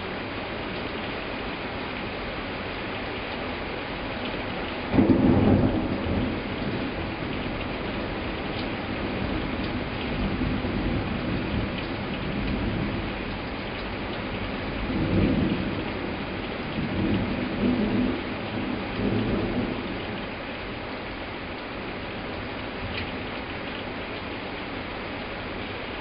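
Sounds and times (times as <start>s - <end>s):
heavy rain hissing: 0.0s - 26.0s
thunder rumbling: 4.9s - 13.2s, 14.8s - 20.3s.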